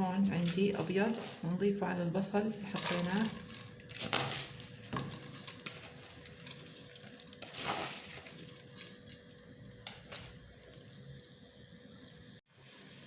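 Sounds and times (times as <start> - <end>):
rice scraping rustle: 2.8 - 8.8.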